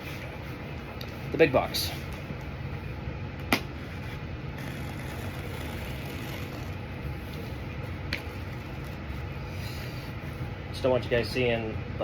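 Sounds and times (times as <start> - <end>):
low room hum: 0.0 - 12.0.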